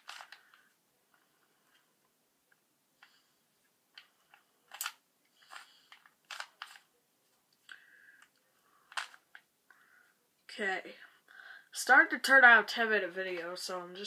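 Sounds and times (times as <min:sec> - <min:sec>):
puzzle cube twisting clicks: 0:00.0 - 0:00.7, 0:04.0 - 0:06.9, 0:08.2 - 0:09.5.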